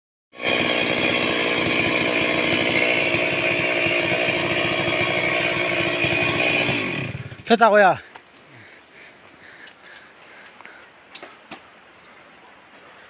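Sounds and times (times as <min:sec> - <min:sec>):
chainsaw running at high speed: 0:00.4 - 0:07.6.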